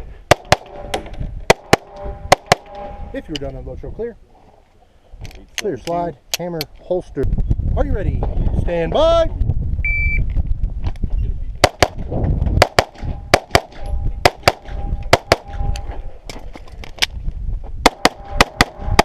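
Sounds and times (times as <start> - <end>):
pistol shots: 12.6 - 15.6, 17.8 - 19.0.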